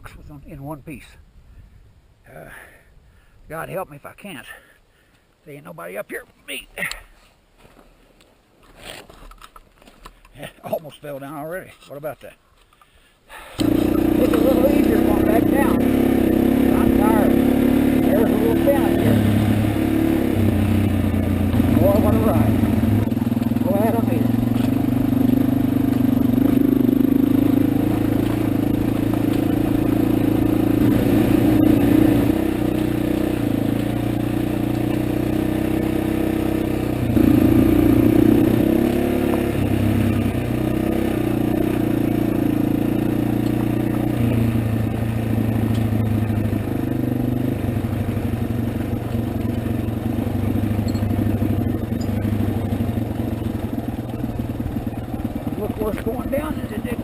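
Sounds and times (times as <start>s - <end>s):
motorcycle engine at low revs: 13.5s - 57.0s.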